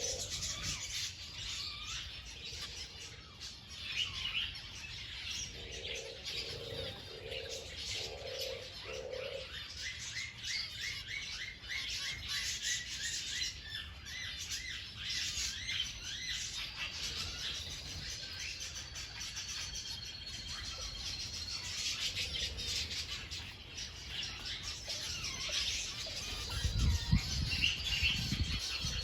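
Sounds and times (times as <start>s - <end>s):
dove cooing: 0.0s - 1.0s, 5.3s - 9.8s
birds chirping: 0.0s - 29.0s.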